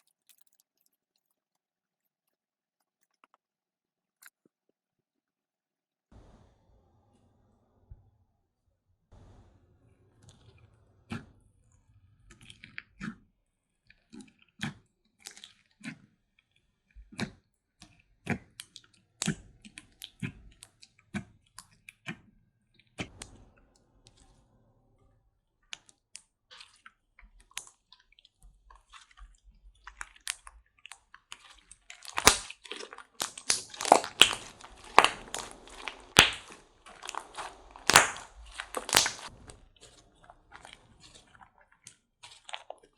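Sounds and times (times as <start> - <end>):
slime squished by hand: 25.7 - 42.9
wet popping of trapped air: 32.2 - 32.5, 33.2 - 39.3.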